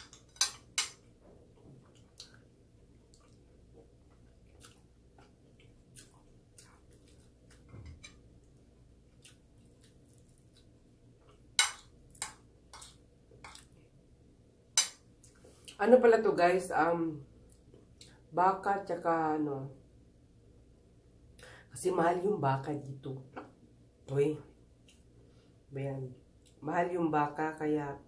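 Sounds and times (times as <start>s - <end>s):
cutlery clinking on plate: 0.0s - 1.0s
faint chewing: 0.1s - 13.9s.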